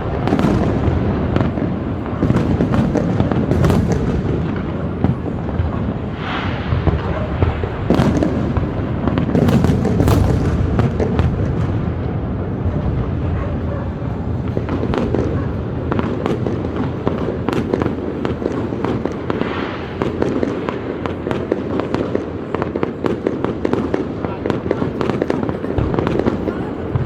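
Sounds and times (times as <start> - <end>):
fireworks crackling pops: 0.0 - 12.1, 14.4 - 27.0.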